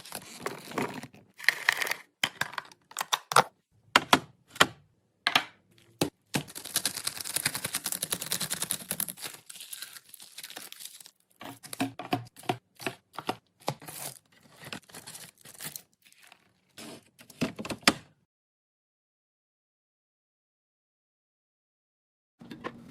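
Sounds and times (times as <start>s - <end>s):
plastic packaging crinkling and tearing: 0.0s - 2.0s, 6.4s - 11.9s, 13.8s - 17.1s.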